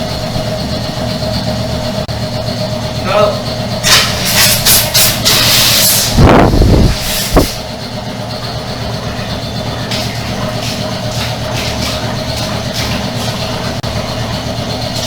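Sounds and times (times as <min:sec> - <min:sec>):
air compressor running: 0:00.0 - 0:15.0
sharp hisses of escaping air: 0:03.8 - 0:06.2, 0:06.8 - 0:07.7
loud rushing air blast: 0:03.8 - 0:07.8.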